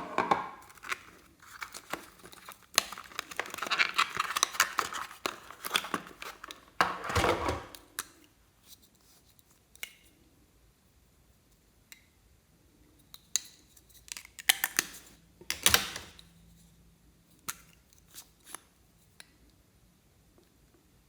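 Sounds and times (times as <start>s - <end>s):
slime crackling and tearing: 0.6s - 6.6s.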